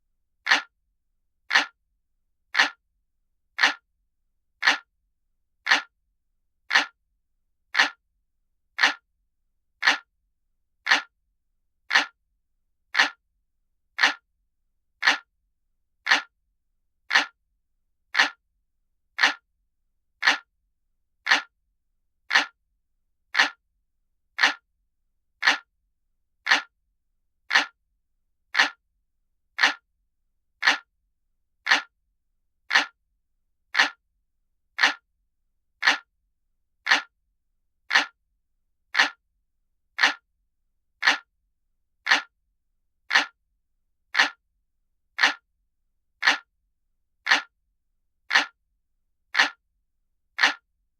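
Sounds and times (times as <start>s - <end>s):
clock ticking: 0.5s - 0.7s, 1.5s - 1.8s, 2.6s - 2.8s, 3.6s - 3.8s, 4.6s - 4.9s, 5.7s - 5.9s, 6.7s - 7.0s, 7.8s - 8.0s, 8.8s - 9.0s, 9.8s - 10.1s, 10.9s - 11.1s, 11.9s - 12.2s, 13.0s - 13.2s, 14.0s - 14.2s, 15.0s - 15.3s, 16.1s - 16.3s, 17.1s - 17.4s, 18.2s - 18.4s, 19.2s - 19.4s, 20.2s - 20.5s, 21.3s - 21.5s, 22.3s - 22.6s, 23.4s - 23.6s, 24.4s - 24.6s, 25.4s - 25.7s, 26.5s - 26.7s, 27.5s - 27.8s, 28.6s - 28.8s, 29.6s - 29.8s, 30.6s - 30.9s, 31.7s - 31.9s, 32.7s - 33.0s, 33.7s - 34.0s, 34.8s - 35.0s, 35.8s - 36.1s, 36.8s - 37.1s, 37.9s - 38.2s, 38.9s - 39.2s, 40.0s - 40.2s, 41.0s - 41.3s, 42.0s - 42.3s, 43.1s - 43.4s, 44.1s - 44.4s, 45.2s - 45.4s, 46.2s - 46.5s, 47.2s - 47.5s, 48.3s - 48.6s, 49.3s - 49.6s, 50.4s - 50.6s.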